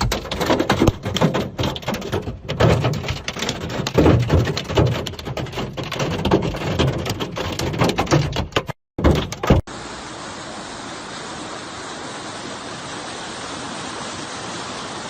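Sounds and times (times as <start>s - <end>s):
irregular knocks: 0.0s - 9.6s
floodwater rushing: 9.2s - 15.0s.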